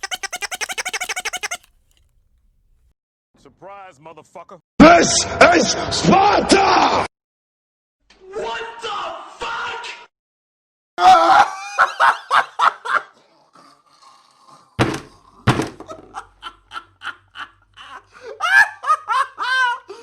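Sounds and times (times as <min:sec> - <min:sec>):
comic laughter sound effects: 0:00.0 - 0:01.7.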